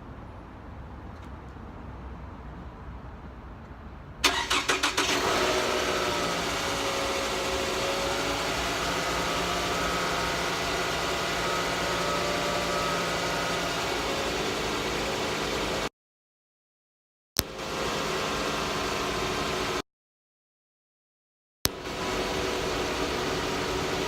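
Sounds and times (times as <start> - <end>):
car engine idling: 4.2 - 15.9, 21.8 - 24.0
starter motor cranking: 4.2 - 15.9.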